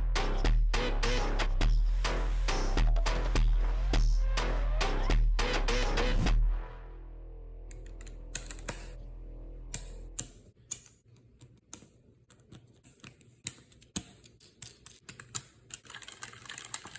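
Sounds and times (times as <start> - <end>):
low hum: 6.1 - 10.4
plastic bricks clicking: 7.7 - 9.0, 12.4 - 16.9.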